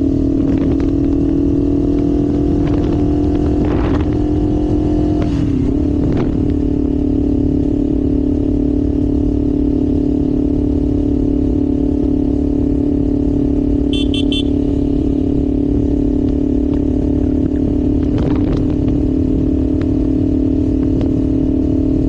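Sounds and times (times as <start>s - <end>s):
motorcycle engine cruising: 0.0s - 22.0s
short high beeps: 13.9s - 15.0s.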